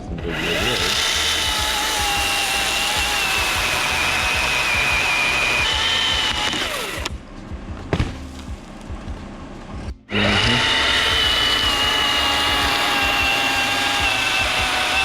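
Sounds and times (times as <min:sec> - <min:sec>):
electric chainsaw cutting wood: 0:00.0 - 0:07.1, 0:10.1 - 0:15.0
sharp knock: 0:07.8 - 0:08.6.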